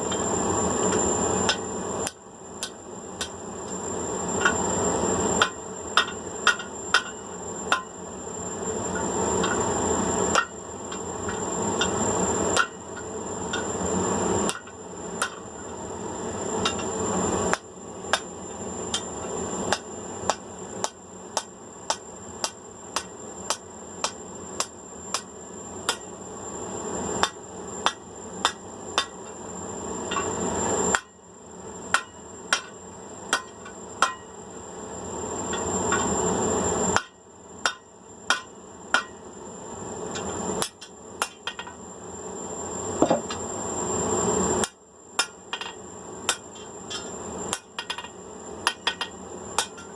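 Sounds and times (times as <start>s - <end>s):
hammer ringing on anvil: 31.9s - 34.3s, 37.0s - 39.2s.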